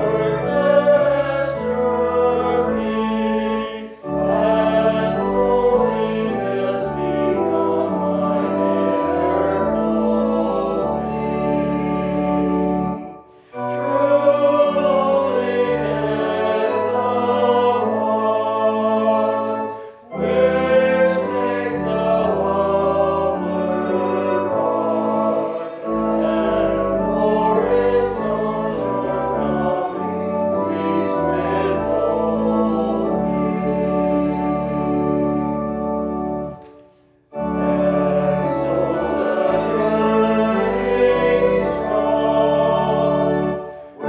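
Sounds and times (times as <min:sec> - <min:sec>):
choir singing: 0:00.0 - 0:44.0.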